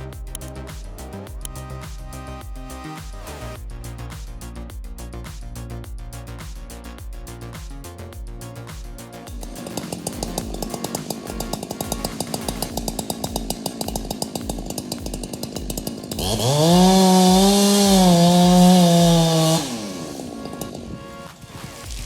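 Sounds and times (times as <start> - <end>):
music beat: 0.0 - 22.0
chainsaw revving: 9.4 - 21.0.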